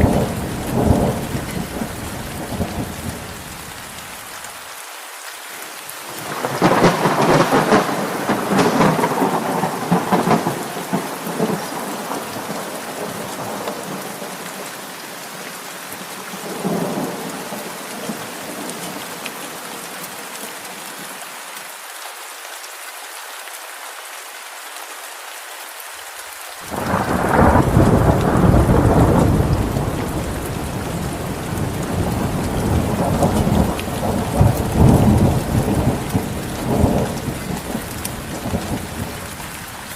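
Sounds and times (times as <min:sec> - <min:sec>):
thunder rumbling: 0:00.0 - 0:03.6, 0:06.2 - 0:14.4, 0:26.7 - 0:39.6
steady rain falling: 0:00.0 - 0:39.9.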